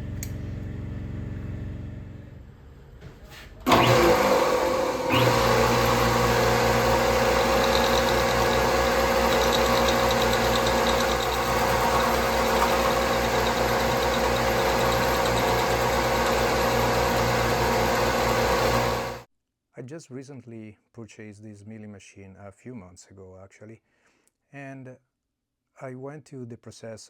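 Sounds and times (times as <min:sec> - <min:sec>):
milling machine humming: 0:03.7 - 0:19.3.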